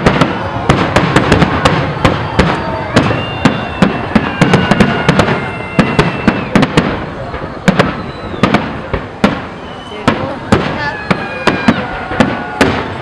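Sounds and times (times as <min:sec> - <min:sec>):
fireworks crackling: 0:00.0 - 0:13.0
steady whistling tone: 0:02.5 - 0:06.8, 0:07.8 - 0:08.7, 0:09.4 - 0:10.5.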